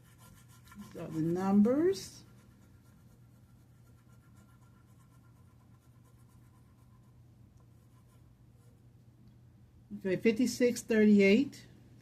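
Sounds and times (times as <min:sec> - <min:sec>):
scratching of scratch-off ticket: 0:00.0 - 0:07.0.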